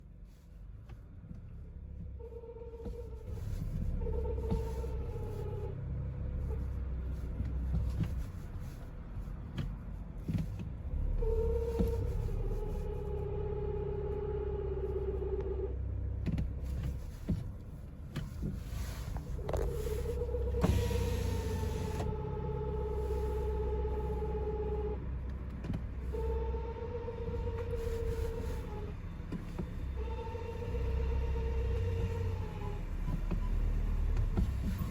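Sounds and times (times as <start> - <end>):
car low rumble: 0.0 - 34.9
mid-pitched gearbox whine: 1.2 - 8.2, 10.3 - 34.9.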